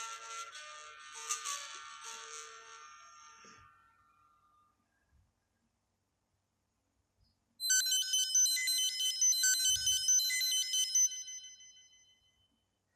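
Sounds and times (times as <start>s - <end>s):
phone ringtone melody: 7.6s - 12.2s.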